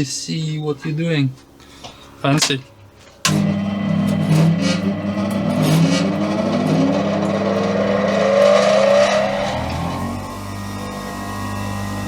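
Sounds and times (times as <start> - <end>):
low motor hum: 3.2 - 12.0
bench grinder spinning up: 3.3 - 12.0.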